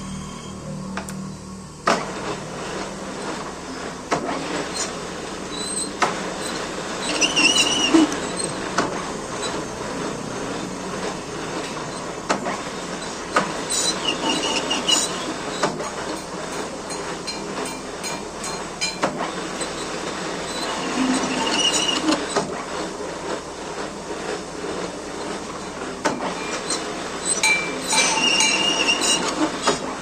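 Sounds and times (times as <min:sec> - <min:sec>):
metal lathe hum and clatter: 0:00.1 - 0:30.0
high-pitched squealing: 0:05.6 - 0:08.6, 0:13.7 - 0:15.6, 0:26.3 - 0:29.5.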